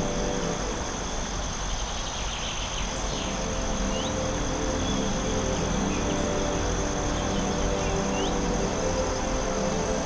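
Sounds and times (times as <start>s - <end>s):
ambient music low tones: 2.9s - 10.0s.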